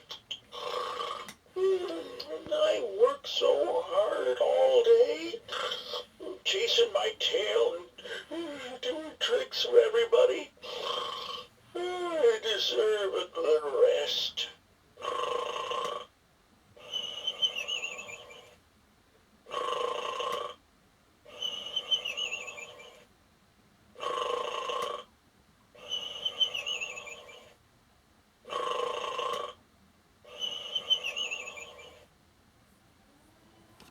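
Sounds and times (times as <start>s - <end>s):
toy dog electronic snoring: 0.0s - 12.9s, 13.5s - 16.1s, 16.8s - 18.6s, 19.5s - 20.6s, 21.3s - 23.1s, 24.0s - 25.1s, 25.8s - 27.6s, 28.4s - 29.6s, 30.2s - 32.1s.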